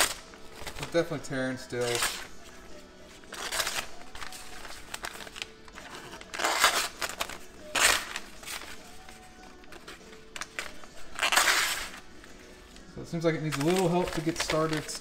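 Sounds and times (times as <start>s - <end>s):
knife slicing paper: 3.3s - 9.3s, 10.4s - 12.1s.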